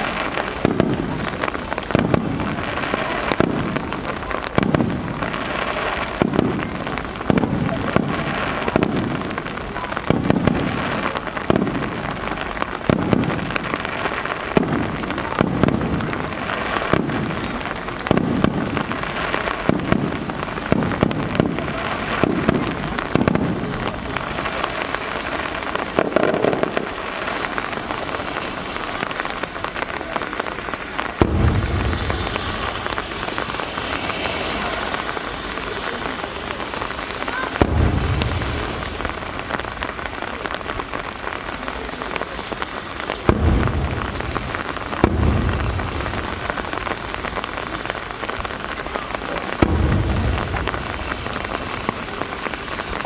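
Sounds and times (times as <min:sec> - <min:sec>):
crackle: 0:00.0 - 0:53.0
fireworks bangs: 0:00.0 - 0:53.0
rain hiss: 0:00.0 - 0:53.0
deep boom with rumble: 0:31.2 - 0:32.5, 0:43.3 - 0:46.6.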